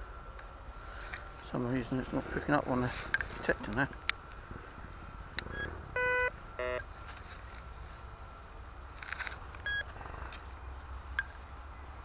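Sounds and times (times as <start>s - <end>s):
metal detector tones: 5.5s - 6.8s.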